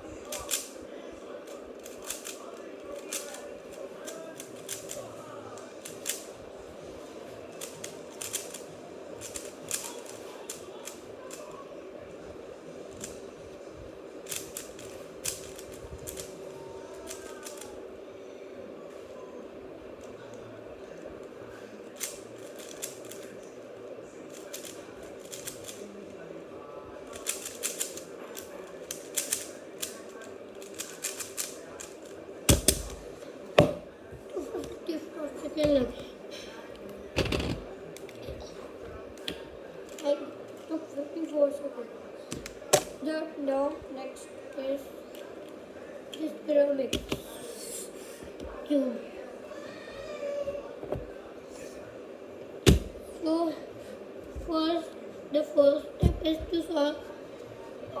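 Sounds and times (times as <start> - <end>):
steady background hum: 0.0 - 58.0
plastic puzzle cube clicking: 0.2 - 0.7, 1.8 - 2.4, 4.0 - 5.0, 5.6 - 6.3, 7.5 - 8.6, 9.2 - 11.4, 14.2 - 16.3, 17.0 - 17.7, 22.0 - 23.3, 24.3 - 25.8, 27.1 - 30.0, 30.6 - 33.0.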